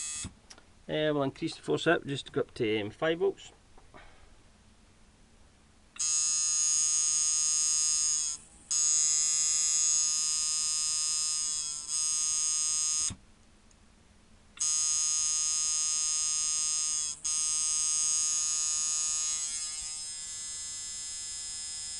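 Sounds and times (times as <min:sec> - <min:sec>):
tattoo machine buzzing: 0:00.0 - 0:00.3, 0:06.0 - 0:13.2, 0:14.6 - 0:21.9.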